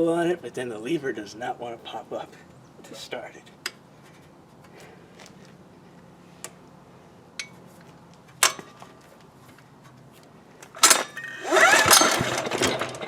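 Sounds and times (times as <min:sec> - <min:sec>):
diesel generator engine whirring: 0:10.7 - 0:13.0
recoil starter pull: 0:10.7 - 0:13.0.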